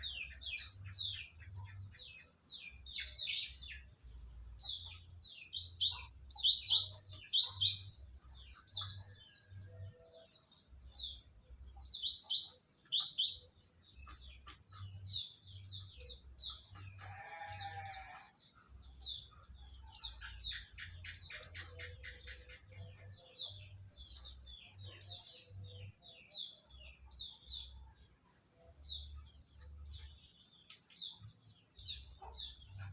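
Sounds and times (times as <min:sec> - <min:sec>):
bird singing high chirps: 0:04.7 - 0:10.5, 0:11.1 - 0:28.0.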